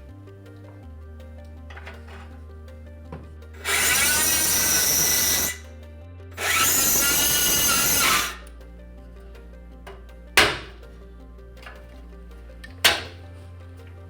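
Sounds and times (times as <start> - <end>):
background music: 0.0 - 14.0
electric power drill running: 3.6 - 5.6, 6.4 - 8.4.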